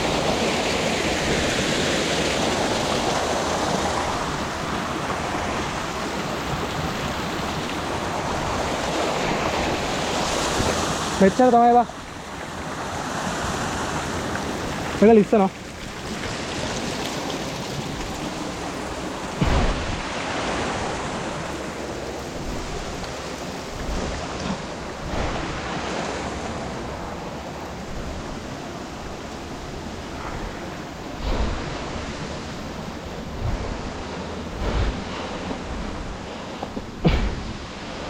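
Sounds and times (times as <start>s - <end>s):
waterfall rushing over rock: 16.2s - 38.0s
low thumps: 19.4s - 20.2s, 23.6s - 25.8s, 30.3s - 37.7s.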